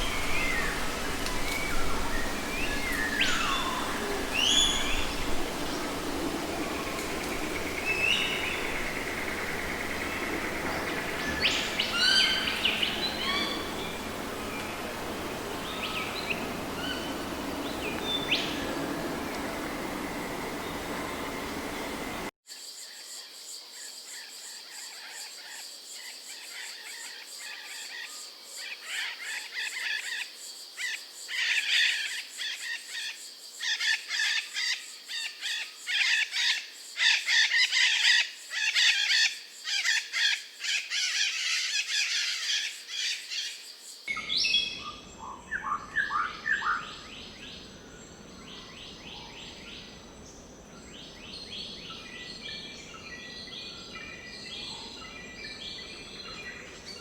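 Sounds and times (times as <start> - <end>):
birds chirping and singing: 0.0 - 22.3
high insect drone: 0.0 - 44.2.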